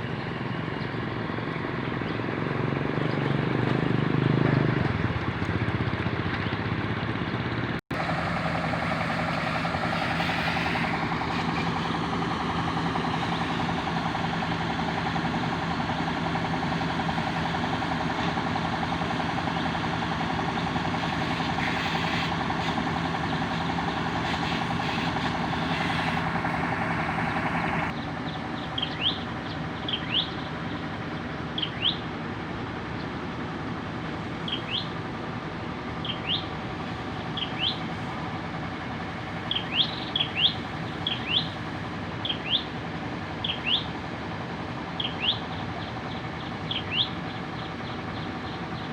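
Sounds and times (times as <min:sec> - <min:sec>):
truck engine idling: 0:04.3 - 0:48.9.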